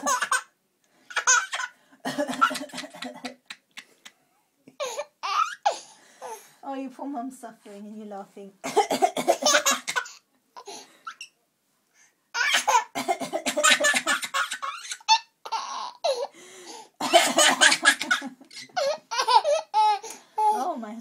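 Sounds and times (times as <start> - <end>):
baby laughing: 0.0 - 0.5, 1.1 - 5.8, 12.3 - 13.0, 13.6 - 16.3, 17.4 - 20.6.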